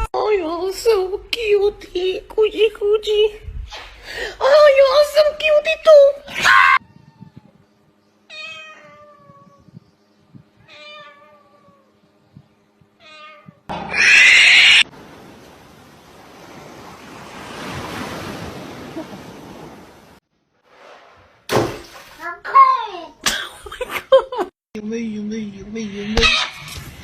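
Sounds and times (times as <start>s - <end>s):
cat meowing: 6.8s - 7.6s, 8.3s - 9.8s, 10.6s - 11.9s, 13.0s - 14.9s.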